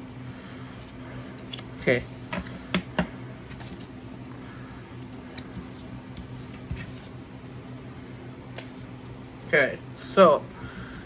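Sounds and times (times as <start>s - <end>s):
cards rustling: 0.3s - 7.2s.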